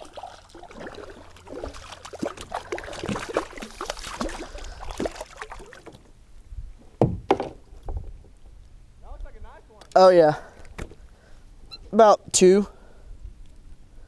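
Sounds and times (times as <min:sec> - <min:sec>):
water splashing: 0:00.0 - 0:06.1.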